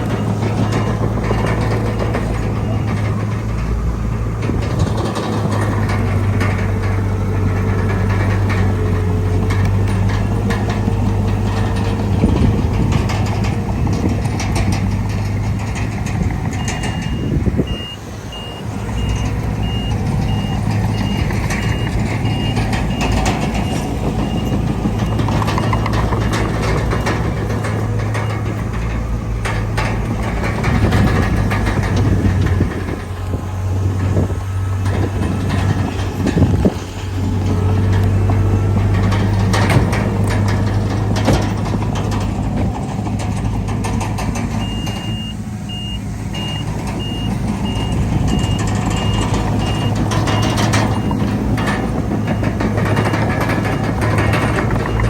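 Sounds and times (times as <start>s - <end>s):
heavy diesel machinery running: 0.0s - 55.0s
reversing alarm beeping: 16.5s - 27.4s, 44.6s - 51.3s, 52.2s - 55.0s.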